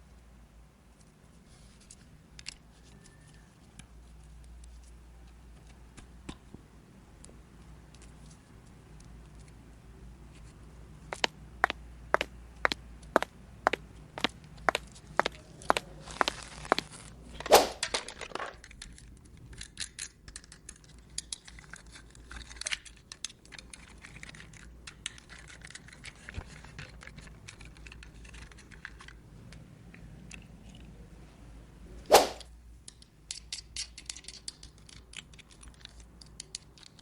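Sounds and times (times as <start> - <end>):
plastic toy parts clicking: 17.8 - 29.2, 32.9 - 37.0.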